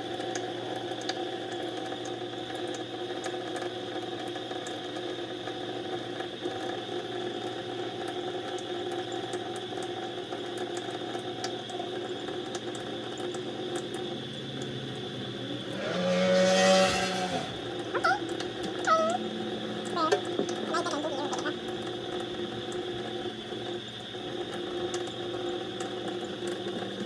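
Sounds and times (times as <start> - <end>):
steady mechanical hum: 10.4 - 27.0.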